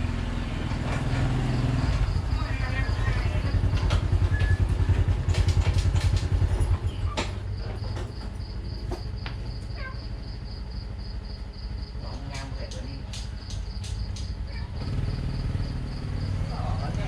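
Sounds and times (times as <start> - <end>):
small engine running: 0.0 - 9.2, 12.5 - 17.0
insect chirring: 8.1 - 16.9.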